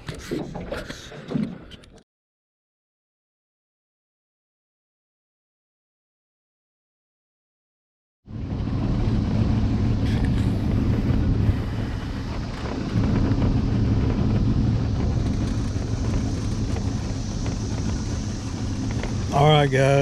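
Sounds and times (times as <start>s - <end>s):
boat engine running: 8.3s - 20.0s
wind noise on microphone: 8.3s - 20.0s.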